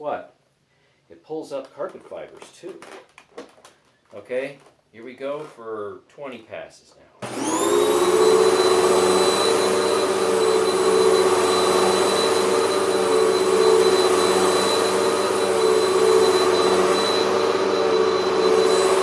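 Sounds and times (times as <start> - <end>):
upright vacuum cleaner running: 7.2 - 19.0.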